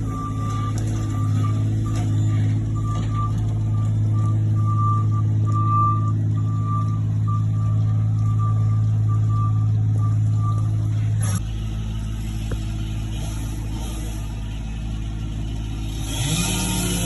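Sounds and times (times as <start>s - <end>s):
backup alarm beeping: 0.0s - 10.8s
diesel vehicle engine running: 0.0s - 17.0s.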